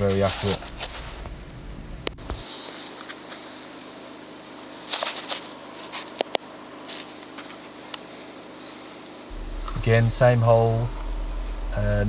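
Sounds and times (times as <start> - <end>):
faint high hiss: 8.8 - 12.0.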